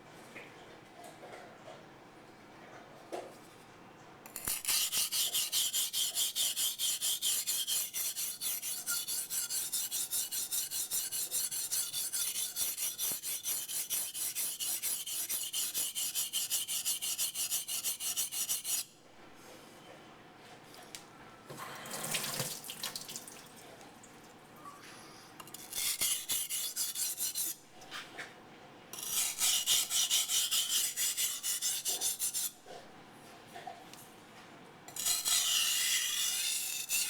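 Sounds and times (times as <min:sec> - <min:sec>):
knife rasping on whetstone: 0:04.4 - 0:18.9, 0:25.4 - 0:27.6, 0:29.0 - 0:32.6, 0:34.9 - 0:37.0.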